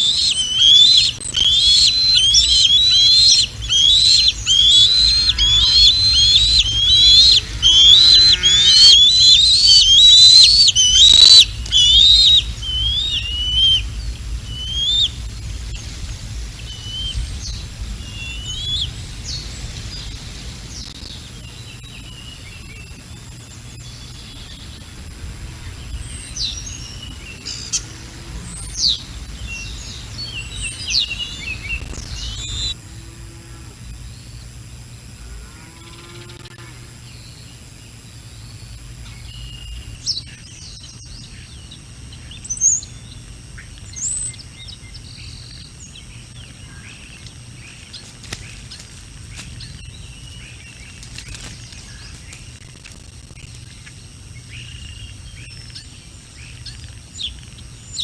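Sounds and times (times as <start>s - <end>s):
eaglet whistled chirps: 0.0s - 15.8s, 16.6s - 23.0s, 28.5s - 32.8s.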